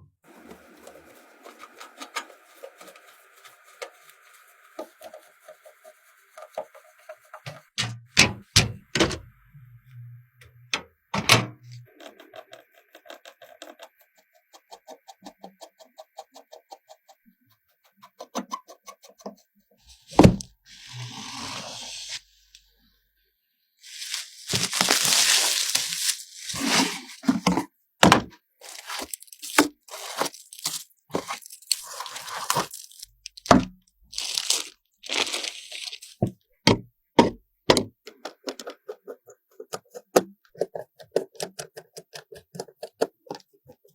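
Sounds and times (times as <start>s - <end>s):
rustling of packaging: 0.3s - 7.4s, 23.8s - 27.6s, 28.6s - 36.4s
clicks and knocks of handling parts: 36.7s - 43.8s.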